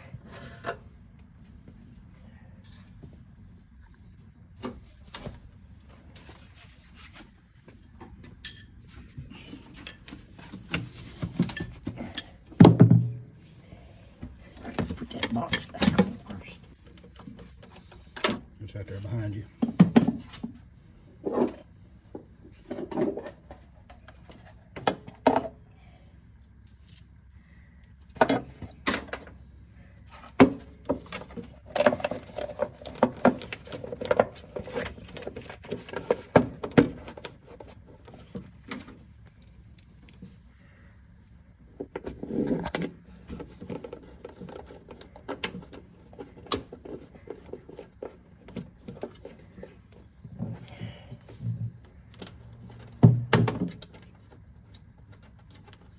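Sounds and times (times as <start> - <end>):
metal tools clinking and rattling: 7.7 - 12.4.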